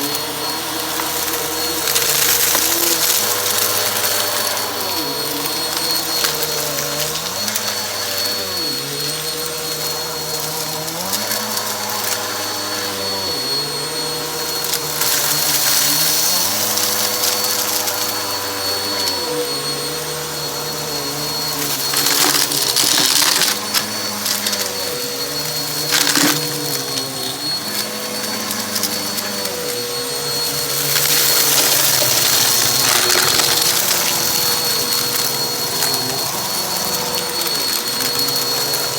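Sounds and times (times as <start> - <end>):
debris crackling in vacuum: 0.0 - 7.6, 10.8 - 19.3, 21.2 - 38.9
vacuum cleaner running: 0.0 - 38.9.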